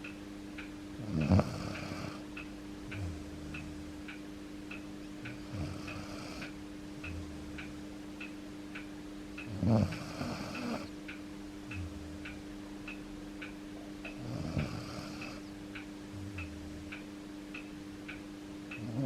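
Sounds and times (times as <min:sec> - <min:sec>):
dog snoring: 0:01.0 - 0:02.2, 0:02.9 - 0:04.0, 0:05.3 - 0:06.5, 0:09.5 - 0:10.9, 0:14.2 - 0:15.5, 0:18.8 - 0:19.0.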